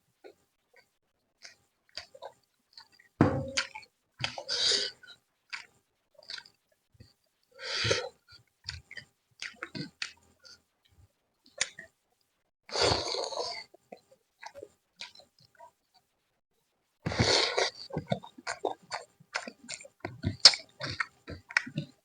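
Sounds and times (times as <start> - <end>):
wet chewing and lip smacks: 0.8 - 3.0, 3.6 - 6.6, 8.7 - 11.9, 13.9 - 16.1, 17.2 - 22.0.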